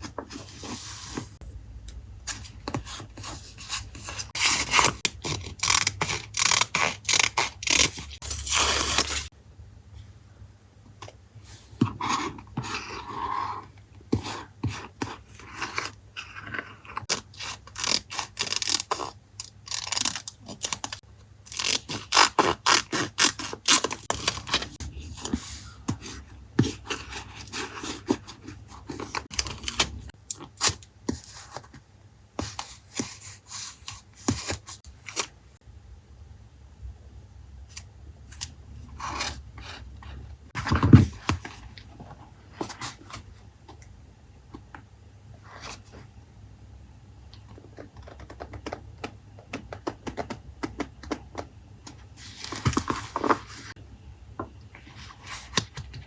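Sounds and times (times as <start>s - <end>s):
paper scraping and rubbing: 0.0s - 1.4s.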